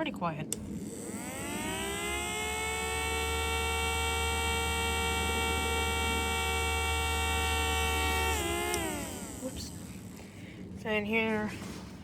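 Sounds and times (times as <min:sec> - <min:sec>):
low hum: 0:00.0 - 0:12.0
steady siren tone: 0:01.0 - 0:10.0.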